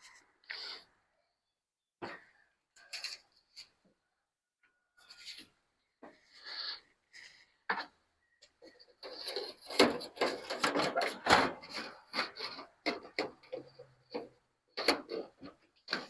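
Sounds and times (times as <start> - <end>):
gutter guards scraping and knocking: 7.7 - 16.0.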